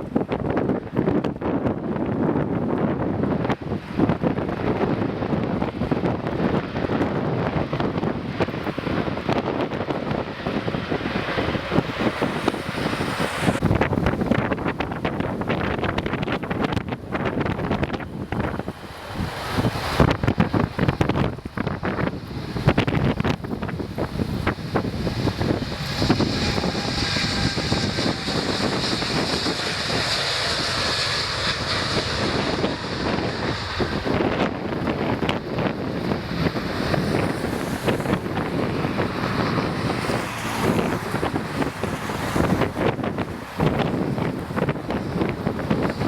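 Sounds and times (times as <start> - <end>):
jet engines whining: 0.0 - 46.0
wind buffeting microphone: 0.0 - 46.0.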